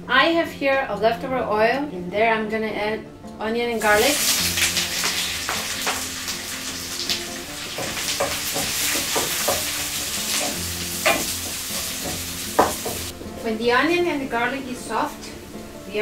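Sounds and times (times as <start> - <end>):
onion sizzling in hot oil: 3.8 - 13.1
stirring knocks: 7.0 - 13.3.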